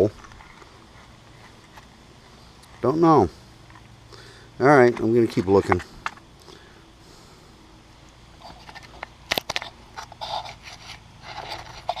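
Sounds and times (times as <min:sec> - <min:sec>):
scraping and rustling handling: 0:00.0 - 0:03.0, 0:04.7 - 0:06.3, 0:08.4 - 0:12.0.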